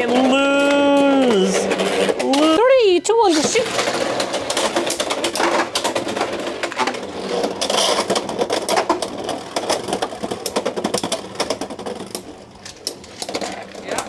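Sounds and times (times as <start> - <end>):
spinning tops clattering: 0.0 - 2.6.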